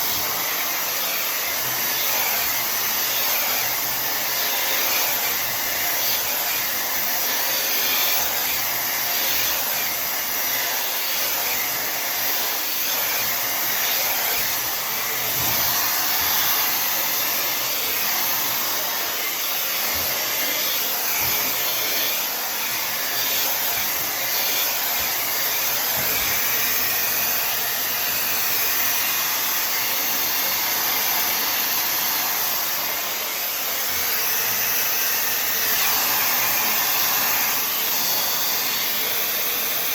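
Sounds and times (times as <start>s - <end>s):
hair dryer blowing air: 0.0s - 39.9s.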